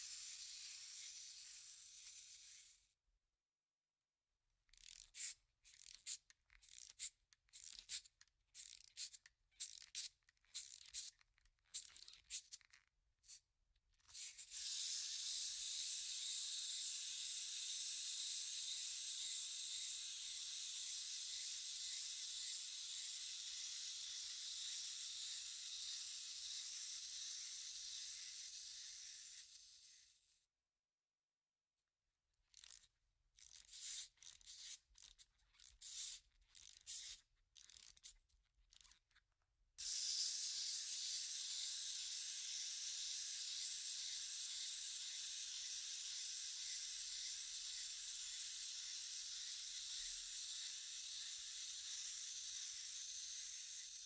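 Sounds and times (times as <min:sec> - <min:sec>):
clockwork spring mechanism whirring: 0:00.0 - 0:02.7, 0:04.8 - 0:11.1, 0:14.2 - 0:30.0, 0:33.4 - 0:38.1, 0:39.8 - 0:54.0
wind-up key rasping: 0:43.4 - 0:54.0.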